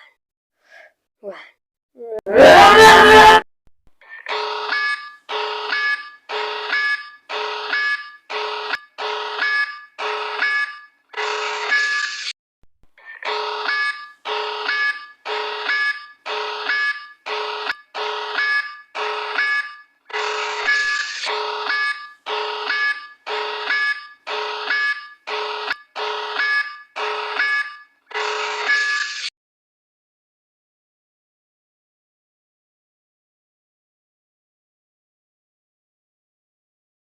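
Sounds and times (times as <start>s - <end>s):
buzzy pulsing alarm: 4.3s - 12.3s, 13.2s - 29.3s.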